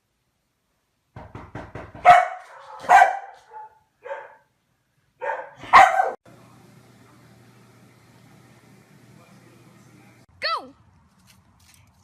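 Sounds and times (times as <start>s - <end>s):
dog barking and yipping: 2.0s - 4.5s, 5.2s - 6.2s.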